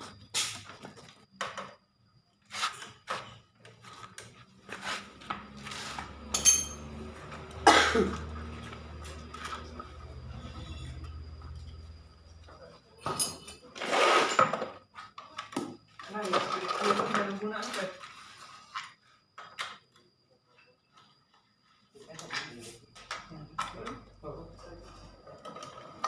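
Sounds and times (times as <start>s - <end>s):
metal tools and engine parts clinking: 6.0s - 14.8s.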